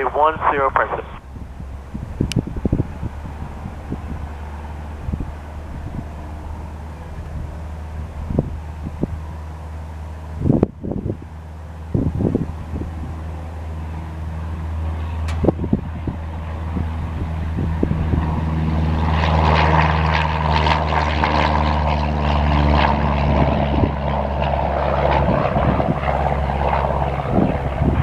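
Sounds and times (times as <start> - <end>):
airplane engine drone: 0.0 - 28.0
propeller rasping: 0.0 - 28.0.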